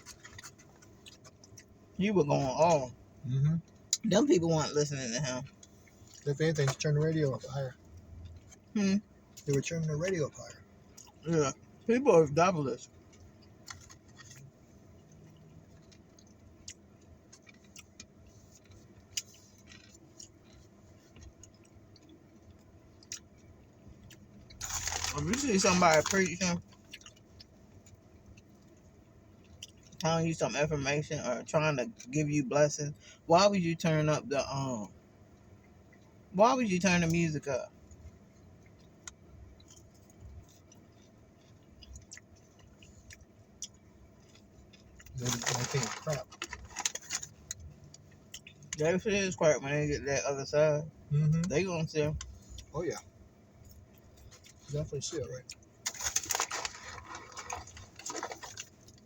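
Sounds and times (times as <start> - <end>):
chewing: 0.0 - 1.8, 5.4 - 8.7, 12.8 - 30.0, 37.8 - 49.0, 52.2 - 59.0
low steady rumble: 0.0 - 59.0.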